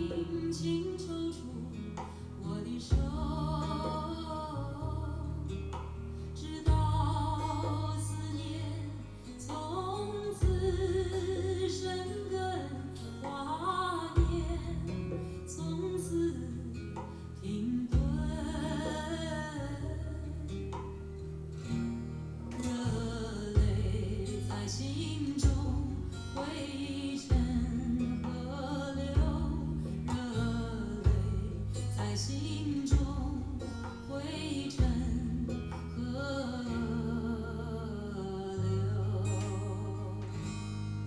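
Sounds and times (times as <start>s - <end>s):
person singing: 0.0s - 21.0s, 22.5s - 40.8s
guitar: 0.0s - 41.0s
deep bass notes: 2.9s - 11.8s, 14.0s - 17.0s, 17.8s - 38.0s.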